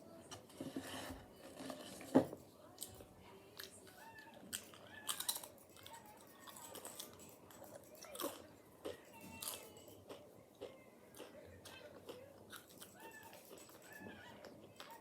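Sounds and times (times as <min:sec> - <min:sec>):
potato chips crunched and chewed: 0:04.6 - 0:07.2.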